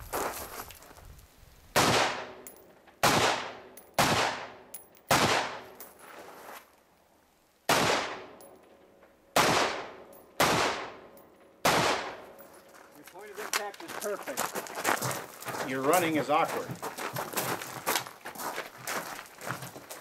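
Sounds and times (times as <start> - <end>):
rifle shots echoing: 1.8 - 5.8, 7.7 - 8.5, 9.3 - 12.5.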